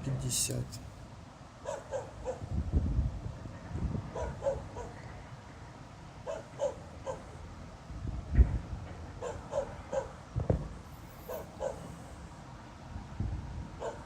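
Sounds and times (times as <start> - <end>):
distant dog barking: 1.6 - 2.5, 4.1 - 5.0, 6.2 - 7.4, 9.2 - 10.2, 11.3 - 12.0, 13.8 - 14.0.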